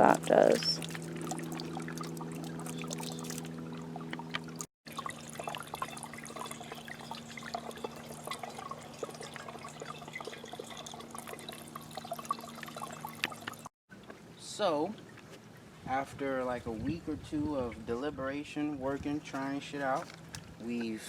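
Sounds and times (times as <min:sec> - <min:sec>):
fountain water splashing: 0:00.0 - 0:13.7
pump humming: 0:00.0 - 0:13.7.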